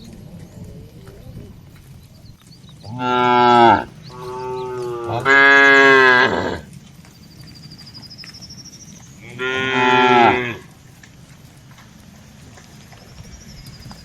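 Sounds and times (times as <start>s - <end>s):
cattle mooing: 2.8s - 6.7s, 9.2s - 10.7s.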